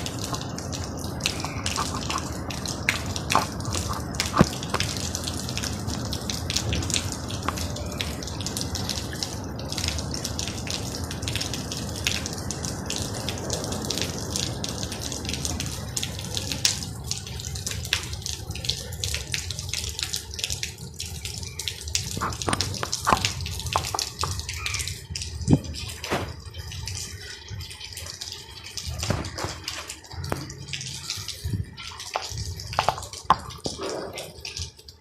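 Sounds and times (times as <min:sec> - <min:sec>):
rain hissing: 0:00.0 - 0:27.3
sharp drips and splashes: 0:00.0 - 0:35.0.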